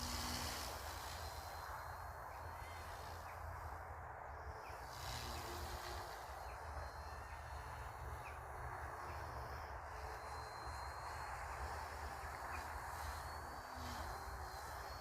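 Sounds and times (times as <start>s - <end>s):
faint bird chirps: 0.0s - 15.0s.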